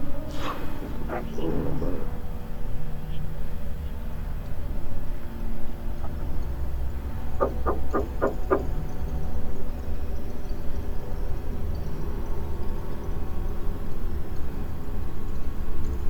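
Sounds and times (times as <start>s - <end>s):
steady low hum: 0.0s - 10.8s.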